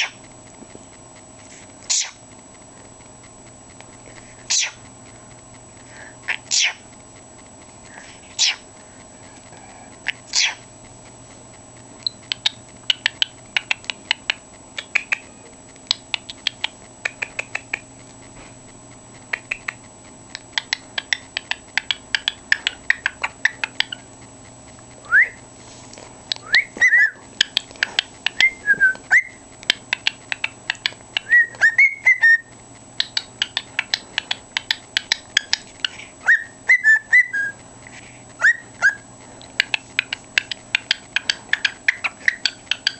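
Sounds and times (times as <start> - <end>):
cockatiel clicking chatter: 0.0 - 25.4, 26.2 - 42.9
cockatiel whistling: 25.1 - 25.4, 26.4 - 27.6, 28.3 - 29.4, 30.7 - 34.0, 36.2 - 37.6, 38.4 - 39.0, 39.7 - 42.9.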